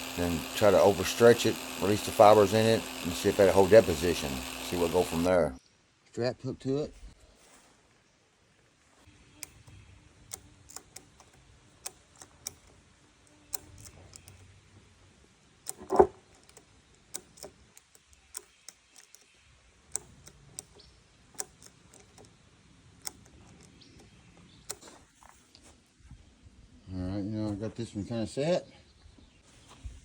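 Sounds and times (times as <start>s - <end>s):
strap ratchet clicks: 0.0s - 5.4s, 9.4s - 14.6s, 15.6s - 19.3s, 19.9s - 22.4s, 23.0s - 24.8s.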